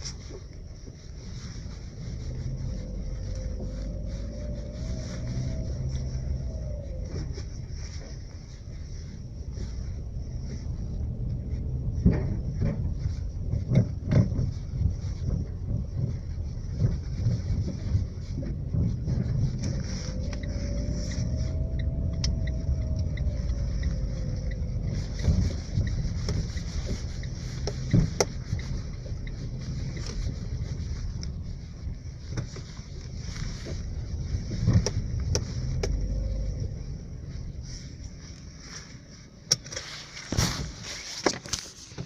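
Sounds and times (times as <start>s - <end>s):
car road rumble: 0.0s - 42.0s
steering knocks: 10.5s - 37.4s.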